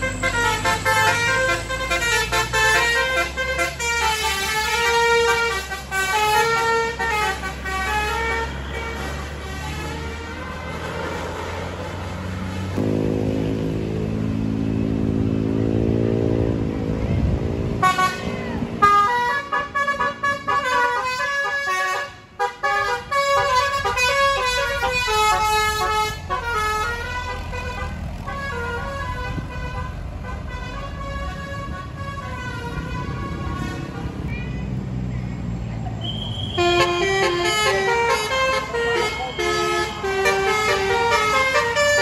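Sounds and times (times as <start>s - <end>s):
musical bus horn playing melody: 0.0s - 10.8s, 17.8s - 33.9s, 36.3s - 42.0s
low engine note: 6.0s - 18.8s.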